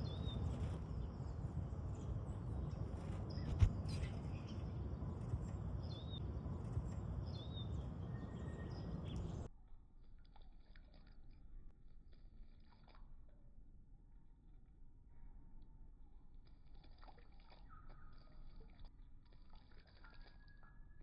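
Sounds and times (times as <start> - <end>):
low outdoor rumble: 0.0 - 9.5
small birds chirping: 0.0 - 9.5.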